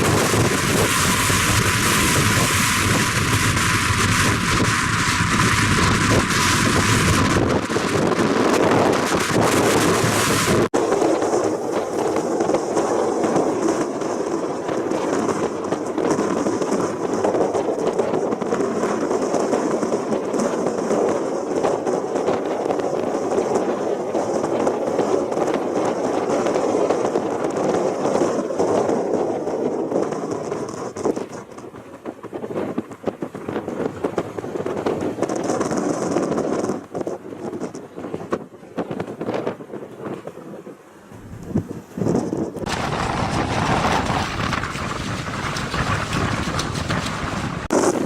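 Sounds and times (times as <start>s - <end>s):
strong wind buffeting microphone: 0.0s - 48.0s.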